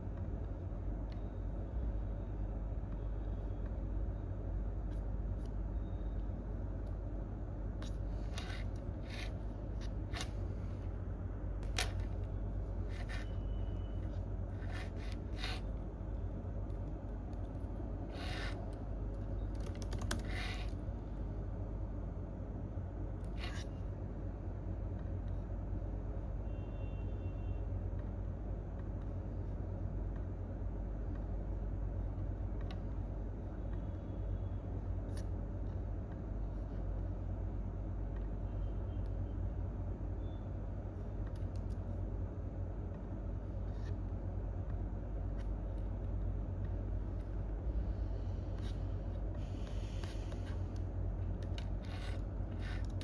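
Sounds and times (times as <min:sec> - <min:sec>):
low room hum: 0:00.0 - 0:53.0
keyboard and mouse clicks: 0:16.7 - 0:20.8, 0:41.2 - 0:41.8.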